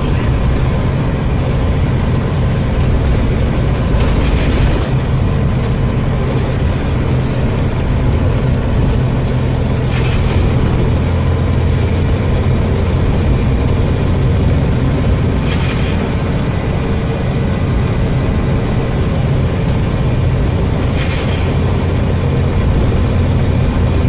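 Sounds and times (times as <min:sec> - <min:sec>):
bus diesel engine running: 0:00.0 - 0:24.0
air hiss bursts: 0:15.5 - 0:16.1, 0:21.0 - 0:21.6.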